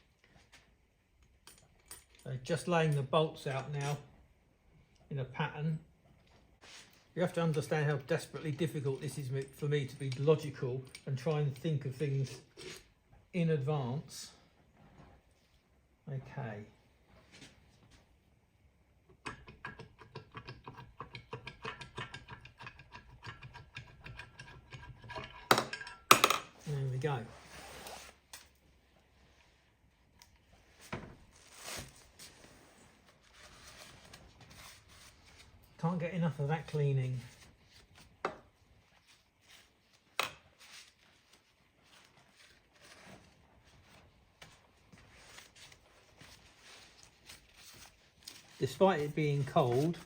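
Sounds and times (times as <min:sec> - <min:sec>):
rubbing and handling noises: 0:26.6 - 0:50.0.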